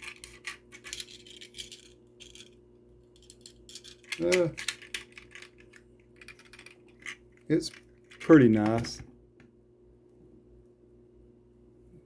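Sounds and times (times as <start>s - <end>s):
toy car and packaging rattling: 0.0s - 2.6s, 3.2s - 8.8s.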